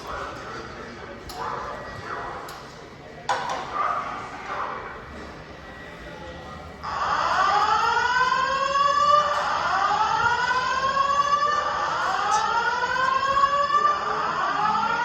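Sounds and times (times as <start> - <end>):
fire alarm rising whoop: 6.9 - 15.0.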